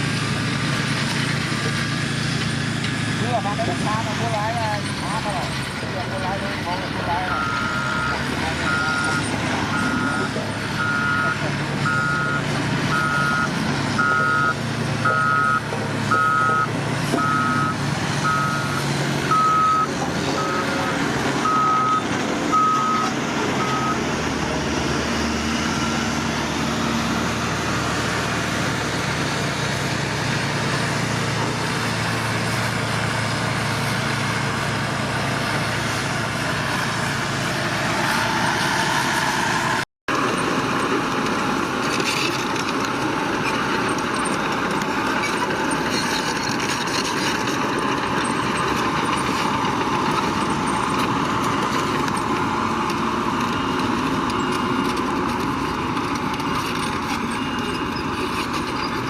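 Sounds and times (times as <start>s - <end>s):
heavy engine running: 0.0s - 59.0s
reversing alarm beeping: 7.2s - 24.1s, 51.9s - 58.9s.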